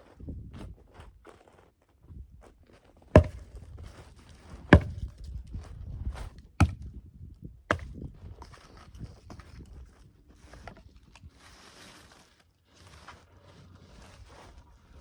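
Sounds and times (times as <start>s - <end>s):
sharp wooden knocks: 3.2s - 3.5s, 4.7s - 5.0s.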